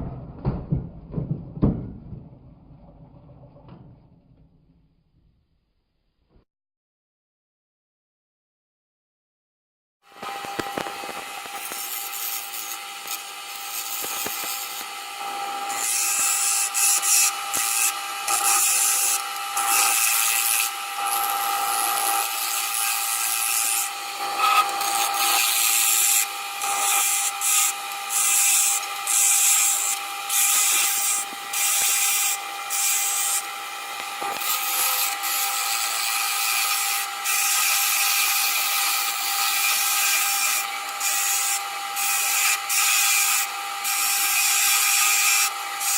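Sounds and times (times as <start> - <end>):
tool scraping spinning wood: 0.0 - 4.5, 10.2 - 45.9
lathe motor hum: 10.2 - 45.9.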